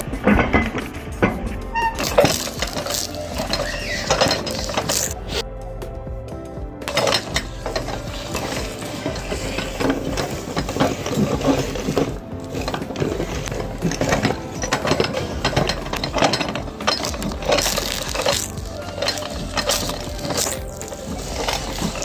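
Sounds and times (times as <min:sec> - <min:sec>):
brittle crunching crackle: 0:14.6 - 0:22.0.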